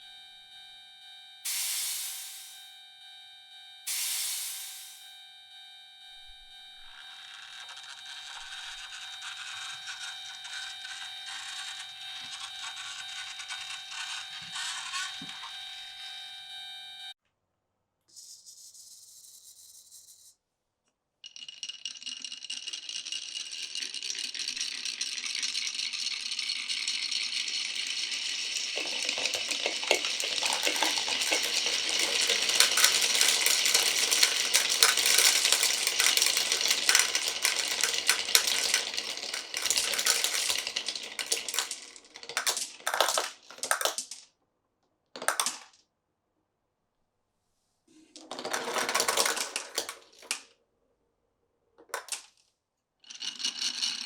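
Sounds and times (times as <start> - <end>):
glass marbles rattling on track: 6.8 - 15.6, 21.2 - 44.2, 45.2 - 45.8, 48.2 - 50.5, 51.9 - 52.4, 53.0 - 54.0.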